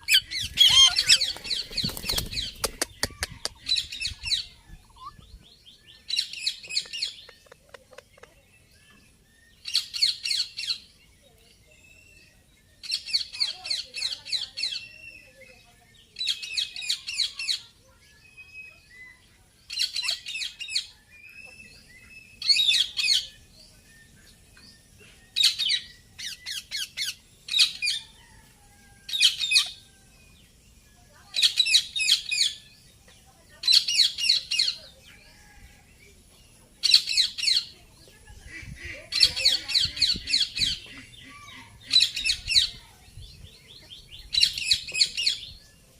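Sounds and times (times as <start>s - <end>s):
parakeet squawking: 0.1s - 1.6s.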